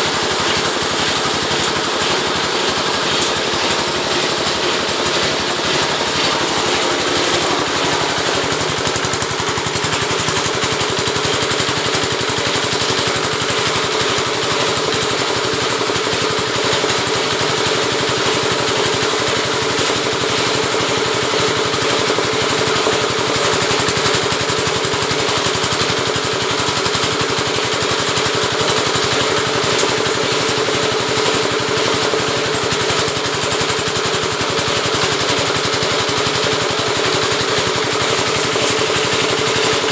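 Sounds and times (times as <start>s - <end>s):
small engine chugging: 0.0s - 39.9s.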